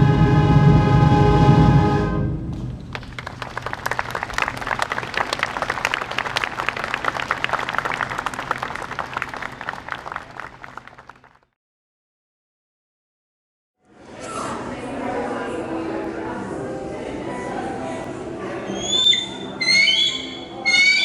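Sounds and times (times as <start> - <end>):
audience applause: 2.9 - 11.5.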